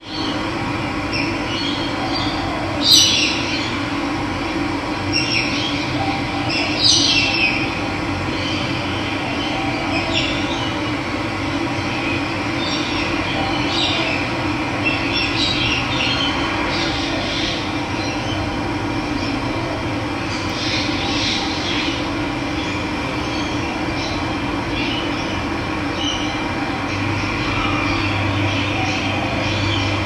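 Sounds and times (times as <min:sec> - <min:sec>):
birds chirping: 0:20.2 - 0:30.0.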